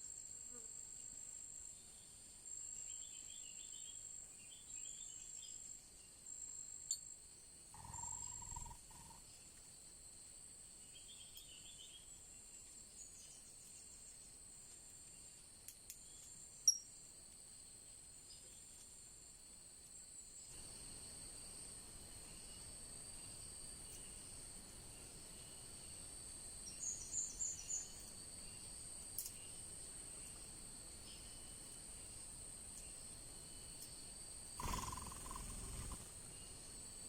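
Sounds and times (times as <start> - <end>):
high-pitched insect buzzing: 7.8 - 9.2, 34.6 - 36.1
small birds chirping: 7.8 - 9.6, 10.8 - 14.3, 26.7 - 28.6, 34.6 - 36.6.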